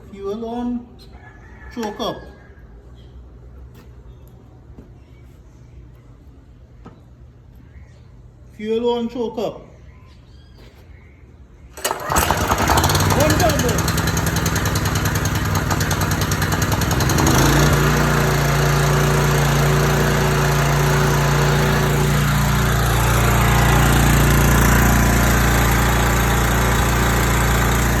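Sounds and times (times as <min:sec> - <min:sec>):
small gas engine running: 0:11.8 - 0:28.0.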